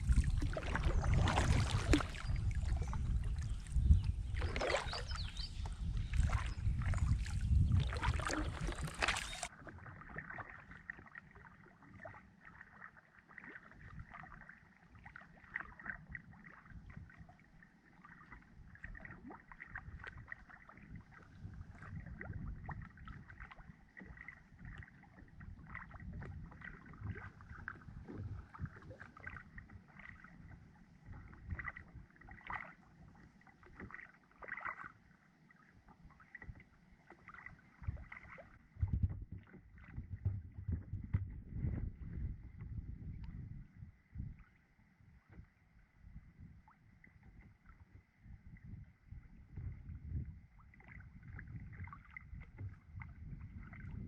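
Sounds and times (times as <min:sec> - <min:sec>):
paddle splashing in water: 0:00.0 - 0:17.3, 0:17.9 - 0:35.1, 0:36.1 - 0:41.9
low rumble: 0:38.6 - 0:44.4.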